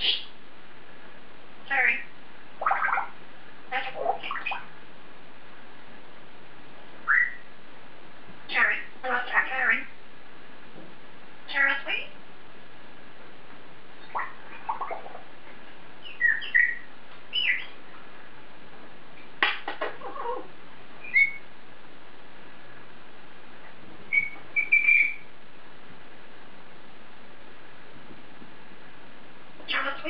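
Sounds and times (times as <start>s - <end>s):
parrot whistling chirpy notes: 7.0s - 7.4s, 16.0s - 17.7s, 21.0s - 21.4s, 24.1s - 25.3s.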